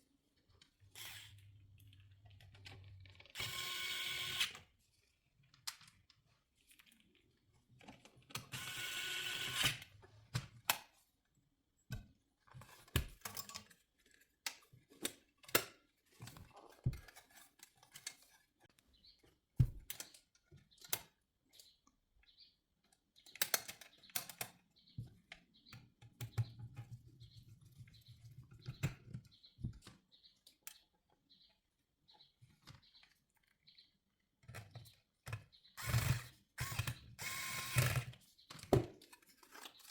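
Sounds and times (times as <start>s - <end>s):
plastic parts clicking and tapping: 11.9s - 21.8s, 22.8s - 27.0s, 34.4s - 39.9s.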